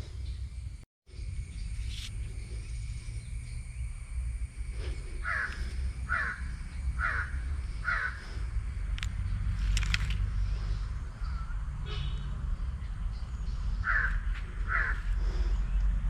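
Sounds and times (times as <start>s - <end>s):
steady low rumble: 0.0s - 16.0s
crow cawing: 5.2s - 8.2s, 13.8s - 15.1s.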